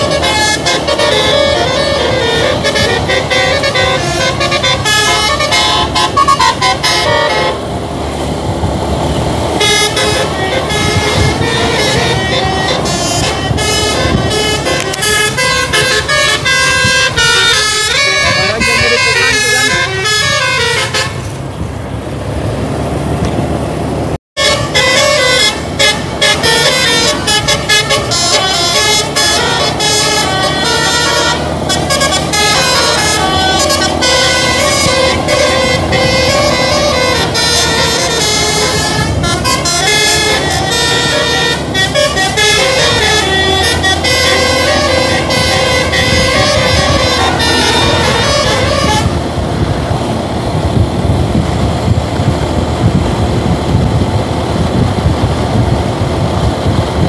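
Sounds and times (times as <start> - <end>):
musical bus air horn: 0.0 - 7.8, 9.4 - 21.4, 24.4 - 49.7.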